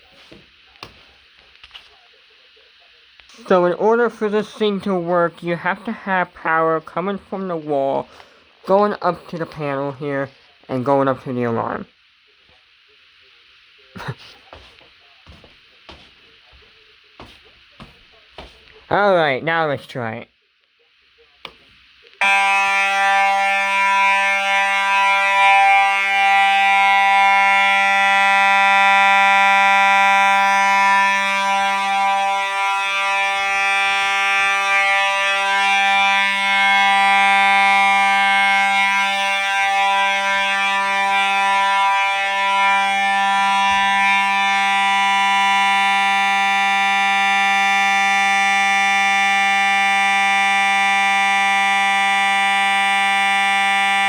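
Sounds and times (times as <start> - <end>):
fire alarm horn continuous tone: 22.2 - 54.0.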